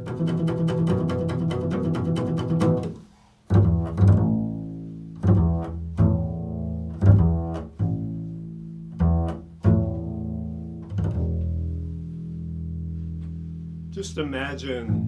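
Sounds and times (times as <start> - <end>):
fast strokes on low strings: 0.0 - 3.0.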